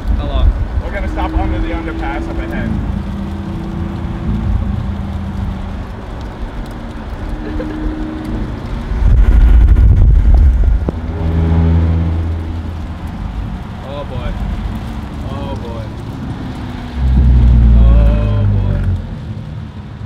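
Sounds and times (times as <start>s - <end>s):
road and wind noise: 0.0s - 20.0s
loud low rumble: 8.7s - 13.7s, 16.9s - 19.8s.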